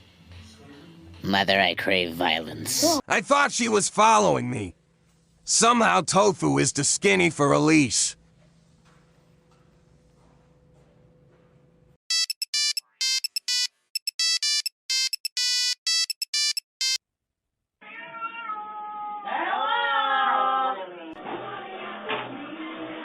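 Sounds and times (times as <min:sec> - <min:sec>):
electronic beeping tune: 0:12.1 - 0:17.0
cat meowing: 0:17.8 - 0:20.6.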